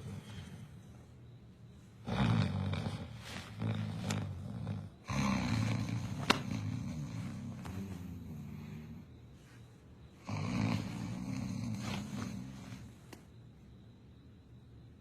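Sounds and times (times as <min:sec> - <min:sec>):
low rattling snoring: 0:00.0 - 0:00.9, 0:02.0 - 0:09.2, 0:10.2 - 0:13.1.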